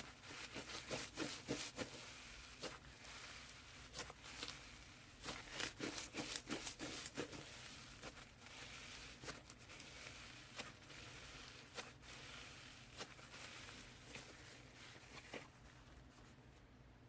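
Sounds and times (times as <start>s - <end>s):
crunchy slime crackling pops: 2.6s - 10.7s.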